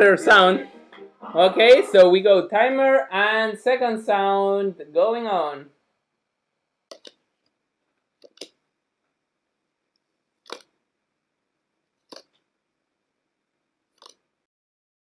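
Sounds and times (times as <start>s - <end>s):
playing cards snapping: 6.9s - 7.2s, 8.2s - 8.6s, 10.4s - 10.7s, 12.1s - 12.3s.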